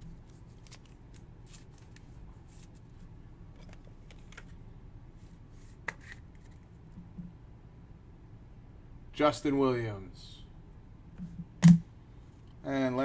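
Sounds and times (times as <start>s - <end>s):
trading cards rustling: 0.2s - 3.0s.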